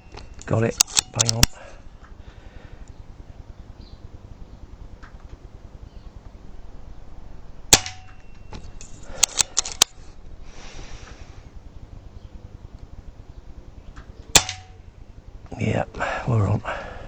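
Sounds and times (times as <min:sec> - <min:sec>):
sharp clicks: 0:00.0 - 0:02.2, 0:02.8 - 0:06.4, 0:07.7 - 0:10.3, 0:11.0 - 0:14.8
air rifle shot: 0:07.7 - 0:08.3, 0:14.3 - 0:14.8.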